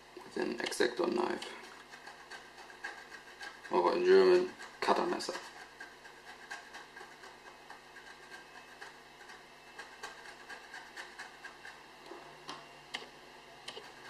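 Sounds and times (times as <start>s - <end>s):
knife blade scraping circuit board: 1.1s - 12.3s.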